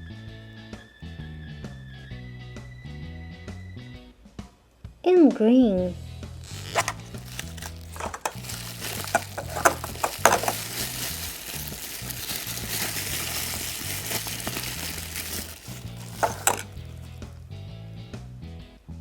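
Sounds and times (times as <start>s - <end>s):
background music with bass line: 5.9s - 19.0s
plastic crinkling: 6.5s - 17.4s
plastic clicks: 6.7s - 11.9s, 14.0s - 17.0s.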